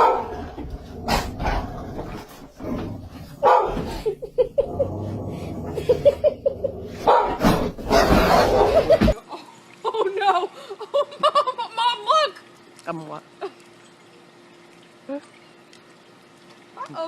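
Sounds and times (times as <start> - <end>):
dog barking and yipping: 0.0 - 0.3, 3.4 - 3.8, 7.0 - 9.0.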